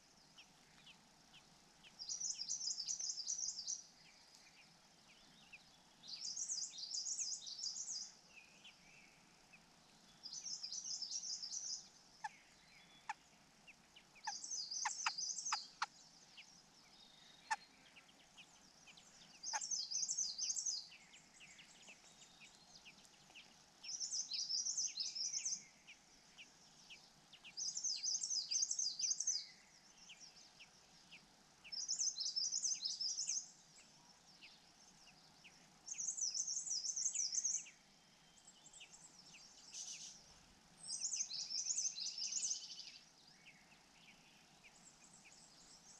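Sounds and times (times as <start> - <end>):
faint clicks: 4.2 - 4.6, 21.4 - 24.0.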